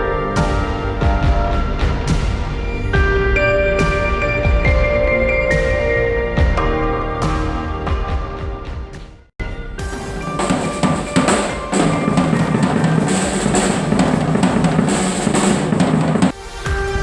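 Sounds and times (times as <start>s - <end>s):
drum-heavy music: 9.4s - 17.0s.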